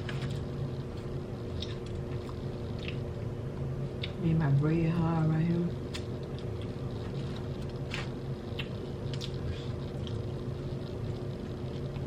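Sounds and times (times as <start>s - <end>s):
person chewing food: 0.0s - 3.3s, 5.9s - 12.0s
steady low hum: 0.0s - 12.0s.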